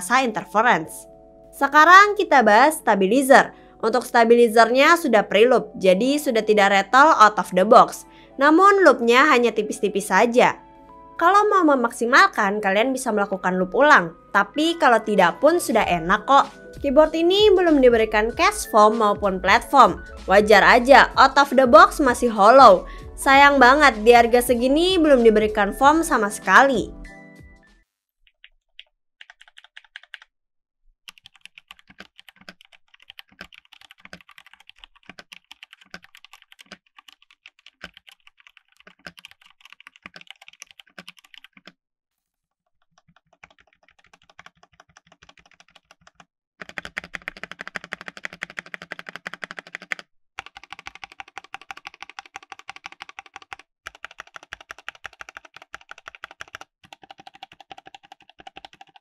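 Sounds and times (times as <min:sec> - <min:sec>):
hollow keyboard keystroke clacks: 0:31.1 - 0:41.8, 0:42.9 - 0:59.0.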